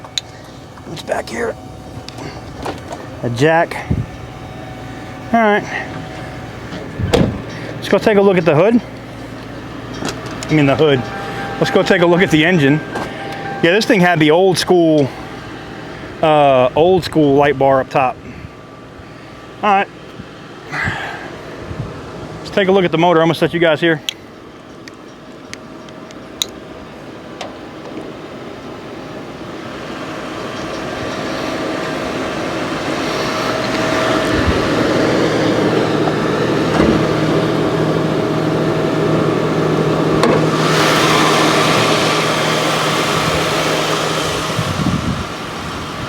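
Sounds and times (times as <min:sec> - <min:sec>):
car engine idling: 0:00.0 - 0:46.0.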